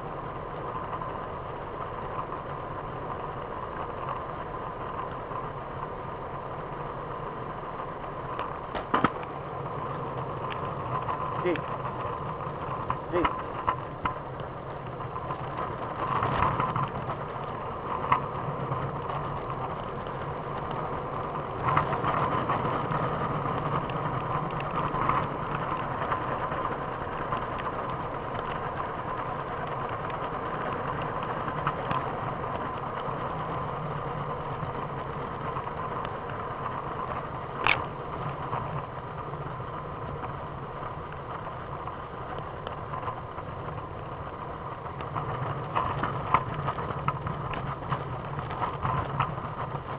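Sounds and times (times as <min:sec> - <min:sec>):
scooter wheels rolling on pavement: 0:00.0 - 0:49.9
scattered clicks: 0:36.0 - 0:38.8.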